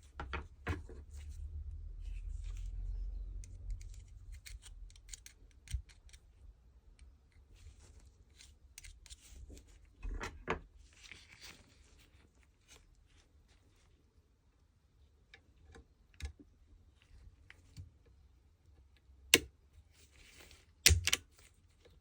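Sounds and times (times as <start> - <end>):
small tools clicking and scraping: 3.4 - 6.3.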